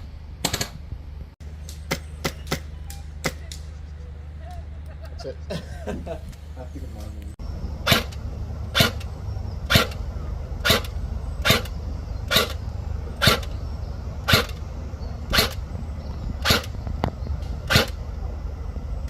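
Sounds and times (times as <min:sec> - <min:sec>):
airsoft gun shots: 0:00.4 - 0:00.8, 0:07.8 - 0:08.2, 0:08.8 - 0:09.0, 0:09.7 - 0:10.0, 0:10.6 - 0:11.7, 0:12.3 - 0:12.6, 0:13.2 - 0:13.5, 0:14.3 - 0:14.6, 0:15.3 - 0:15.6, 0:16.4 - 0:16.8, 0:17.7 - 0:18.0.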